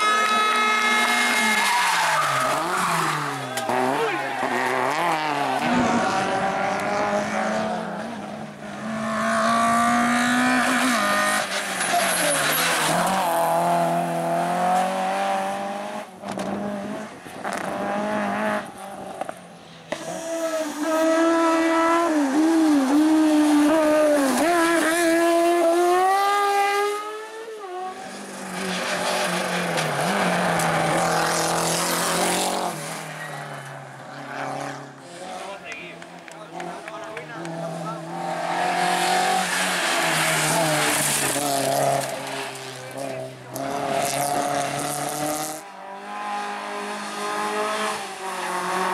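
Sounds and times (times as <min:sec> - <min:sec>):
tyre squeal: 0:00.0 - 0:04.9, 0:11.6 - 0:13.2, 0:33.1 - 0:33.7
race car engines revving: 0:00.0 - 0:48.9.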